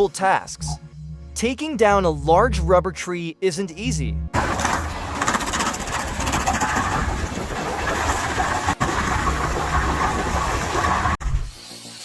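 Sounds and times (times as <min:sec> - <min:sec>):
engine-driven machinery rattling: 0:04.4 - 0:11.2.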